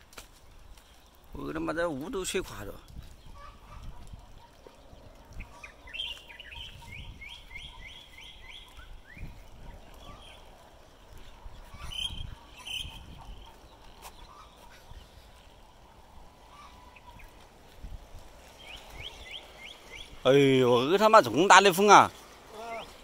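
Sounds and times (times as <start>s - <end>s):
wind buffeting microphone: 0.4s - 20.9s
bird chirping: 2.8s - 17.5s, 18.4s - 21.6s.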